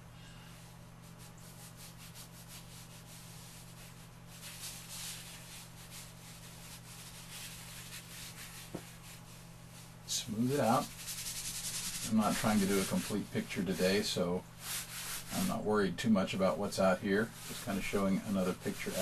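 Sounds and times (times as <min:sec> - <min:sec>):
faint electrical hum: 0:00.0 - 0:19.0
chalk scraping on paper: 0:01.0 - 0:09.3, 0:10.3 - 0:15.6, 0:17.4 - 0:19.0.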